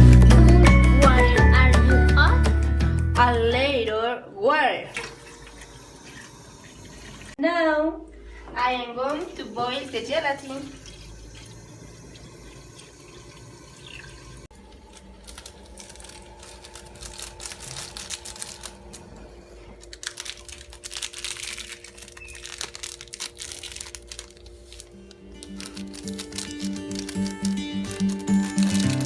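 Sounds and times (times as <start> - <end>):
water sloshing in a pot: 4.8 - 7.4, 9.3 - 16.7
crackling and clicking: 19.8 - 29.0.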